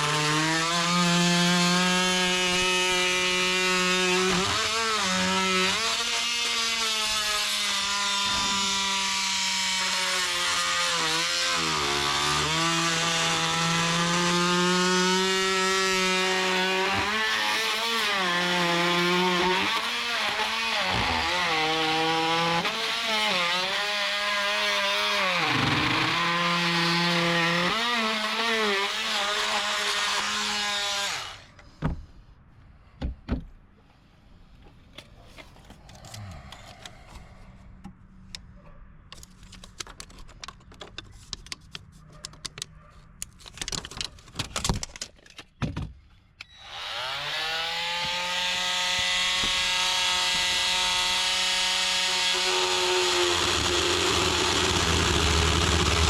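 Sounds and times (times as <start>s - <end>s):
oscillating saw cutting wood: 0.0s - 31.6s, 46.4s - 56.0s.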